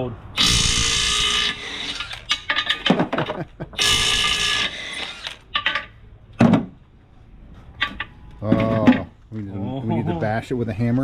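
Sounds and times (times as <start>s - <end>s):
impact wrench hammering: 0.4s - 3.1s, 3.8s - 5.9s
metallic knocks and clanks: 0.4s - 6.8s, 7.6s - 9.2s.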